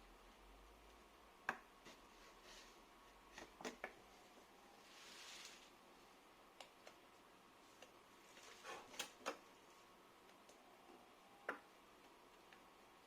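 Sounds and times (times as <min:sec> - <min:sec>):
faint clicks and taps: 0:00.8 - 0:02.1, 0:06.5 - 0:08.0, 0:08.8 - 0:12.9.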